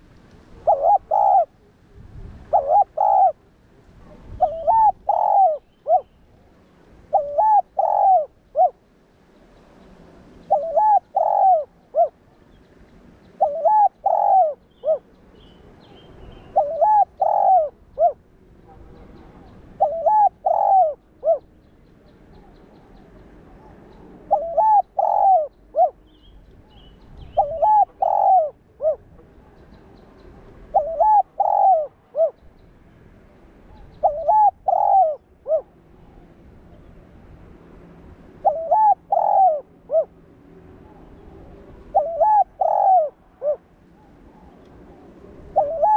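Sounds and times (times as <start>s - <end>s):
dove cooing: 0.0s - 1.7s, 2.4s - 6.2s, 7.1s - 8.8s, 10.4s - 12.2s, 13.4s - 15.2s, 16.4s - 21.5s, 22.4s - 26.0s, 27.2s - 32.4s, 33.7s - 36.4s, 38.4s - 40.2s, 40.8s - 45.9s.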